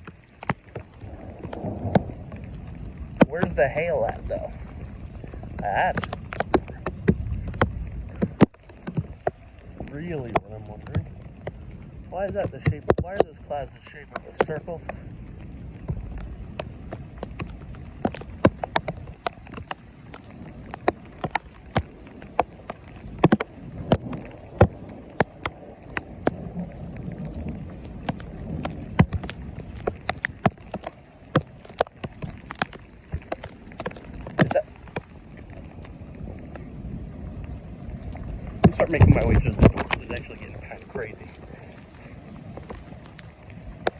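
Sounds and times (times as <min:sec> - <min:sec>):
low rumble of thunder: 0:00.0 - 0:43.9
raindrops tapping: 0:00.0 - 0:43.9.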